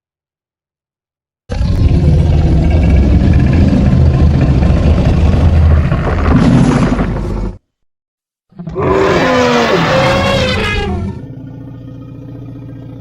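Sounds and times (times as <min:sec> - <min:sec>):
monster growling roar: 0:01.5 - 0:07.6, 0:08.6 - 0:12.7
roar gliding downward: 0:01.5 - 0:07.6, 0:08.6 - 0:13.0.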